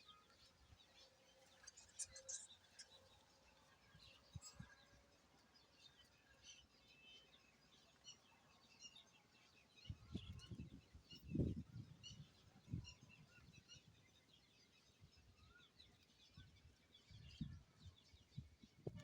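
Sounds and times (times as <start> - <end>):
small birds chirping: 0.0 - 19.0.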